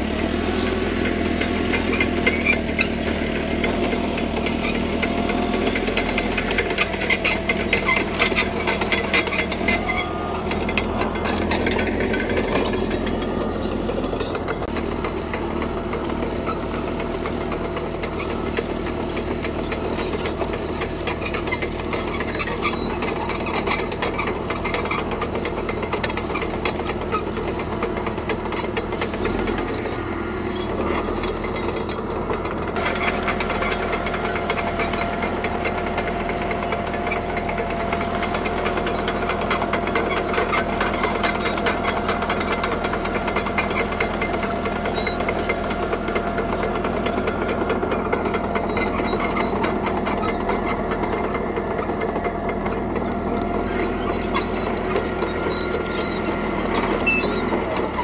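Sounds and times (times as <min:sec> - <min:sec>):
bulldozer diesel engine under load: 0:00.0 - 0:58.0.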